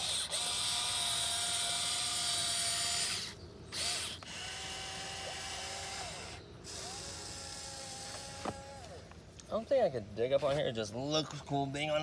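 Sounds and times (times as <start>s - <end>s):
toy excavator motors whining: 0.0s - 9.2s.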